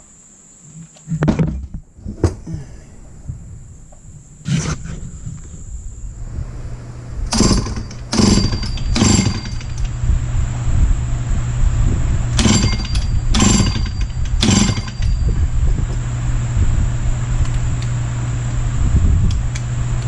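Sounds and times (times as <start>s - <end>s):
chainsaw revving: 7.3s - 9.9s, 12.3s - 15.2s
chainsaw engine starting and running: 7.3s - 10.0s, 12.3s - 15.3s.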